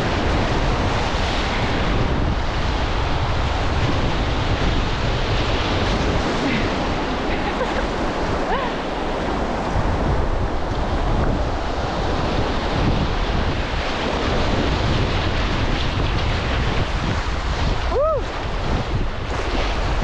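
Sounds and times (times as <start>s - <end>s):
river whitewater rushing: 0.0s - 15.6s
wind buffeting microphone: 0.0s - 20.0s.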